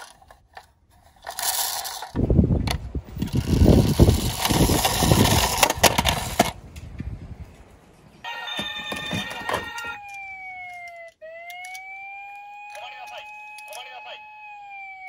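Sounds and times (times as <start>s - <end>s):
toy cars rattling down plastic slope: 0.0s - 2.2s, 3.2s - 6.6s
electronic toy beeping: 8.3s - 11.9s
toy siren wail: 8.3s - 15.0s.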